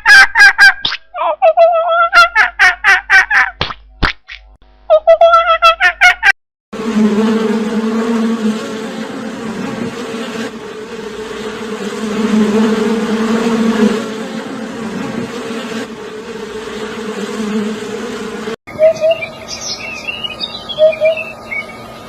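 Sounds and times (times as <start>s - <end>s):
flying insect buzzing: 6.7s - 19.8s.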